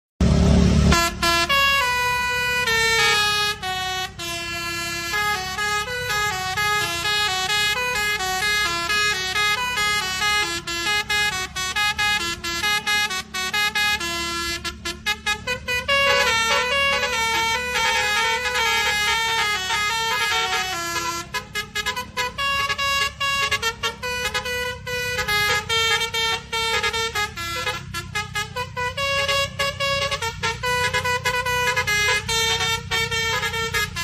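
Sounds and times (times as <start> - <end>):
loud low rush: 0.2 - 3.8
bus musical horn melody: 0.2 - 34.0.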